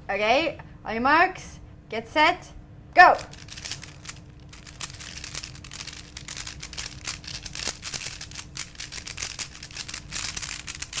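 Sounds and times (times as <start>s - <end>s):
speedcubes clicking: 3.2s - 11.0s.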